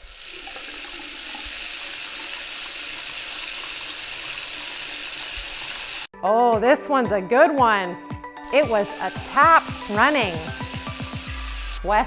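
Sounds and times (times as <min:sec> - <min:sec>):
tap running into a sink: 0:00.3 - 0:06.0.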